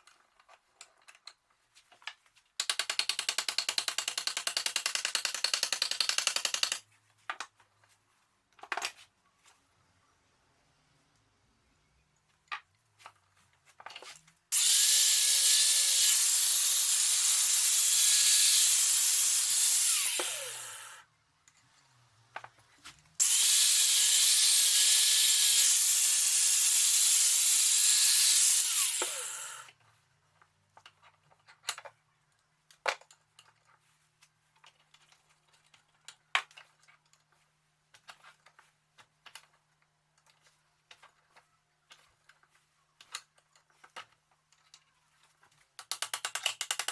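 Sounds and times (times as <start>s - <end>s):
power tool whining: 14.5s - 21.0s, 23.2s - 29.7s.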